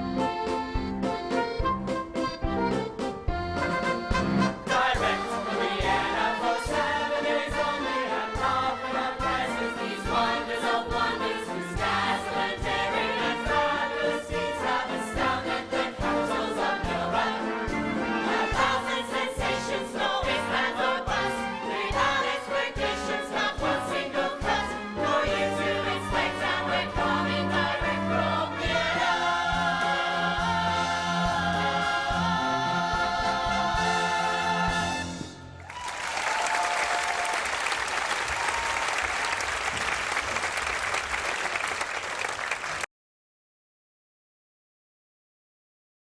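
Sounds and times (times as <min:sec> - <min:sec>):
band accompaniment with bass beat: 0:00.0 - 0:06.0.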